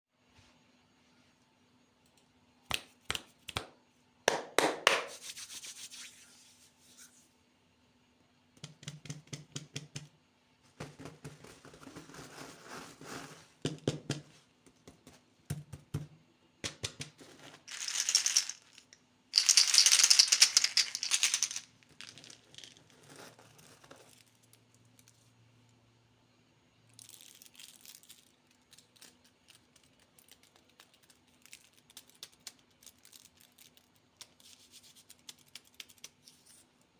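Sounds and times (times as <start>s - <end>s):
plastic wrappers crinkling: 17.7s - 22.3s
sharp clicks and rattles: 17.7s - 22.3s.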